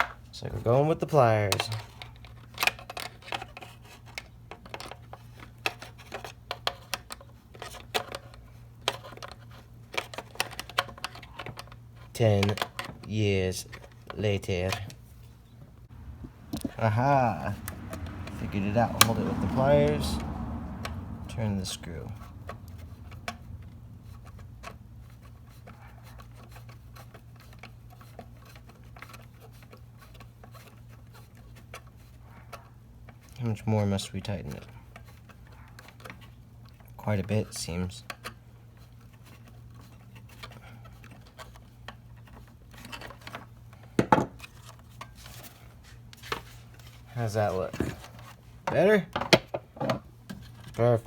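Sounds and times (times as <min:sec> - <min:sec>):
steady low hum: 0:13.2 - 0:26.1.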